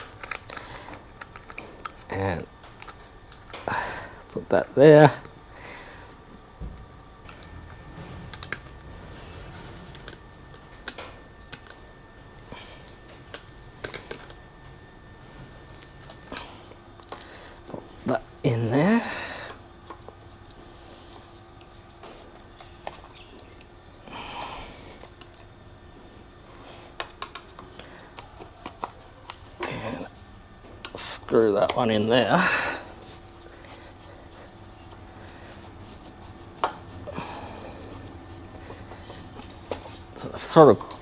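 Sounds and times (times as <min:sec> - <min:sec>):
small parts clicking: 0:00.0 - 0:04.4
small parts clicking and knocking: 0:00.0 - 0:04.4, 0:06.0 - 0:08.9, 0:09.8 - 0:11.8, 0:12.8 - 0:14.4, 0:26.9 - 0:30.1
hands rustling: 0:31.6 - 0:41.0.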